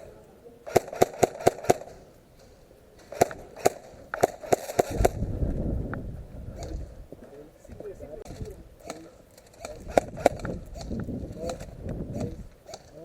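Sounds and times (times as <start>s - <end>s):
airsoft gun firing: 0.6s - 2.0s, 3.0s - 5.3s, 8.8s - 13.0s
low rumble: 5.0s - 7.1s.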